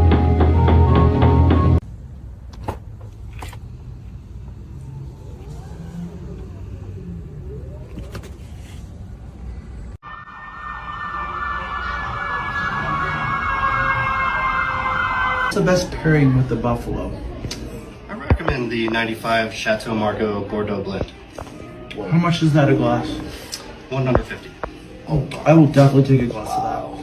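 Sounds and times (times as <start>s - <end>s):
low traffic rumble: 0.0s - 27.0s
emergency siren wailing: 4.6s - 8.1s, 10.0s - 16.4s.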